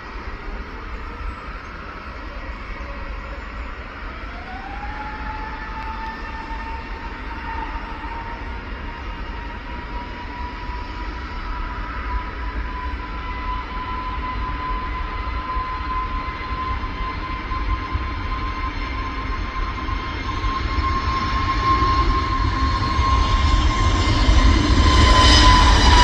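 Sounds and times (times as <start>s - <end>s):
low engine rumble: 0.0s - 18.4s
jet engine whine: 0.0s - 26.0s.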